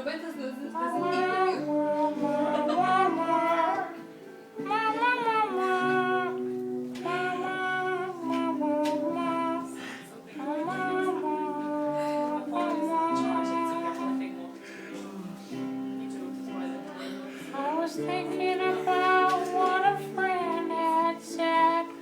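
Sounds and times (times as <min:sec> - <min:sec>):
guitar accompaniment: 0:00.0 - 0:22.0
person singing slow melody: 0:00.7 - 0:22.0.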